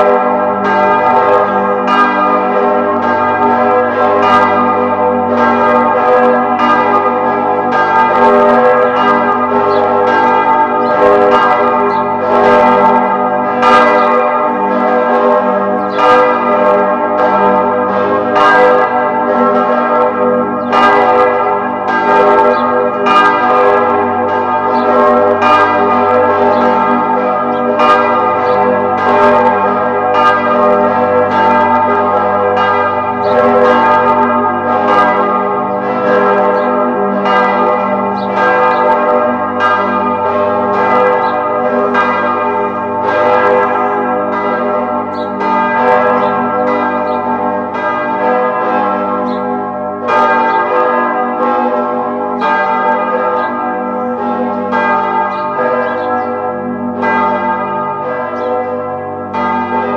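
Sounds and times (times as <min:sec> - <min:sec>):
church bells ringing: 0:00.0 - 0:59.9.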